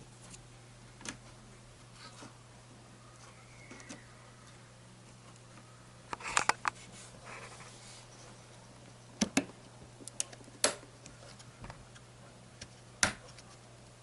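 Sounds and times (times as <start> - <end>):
faint steady hum: 0.0 - 14.0
plastic clicks of ram modules: 9.2 - 12.0.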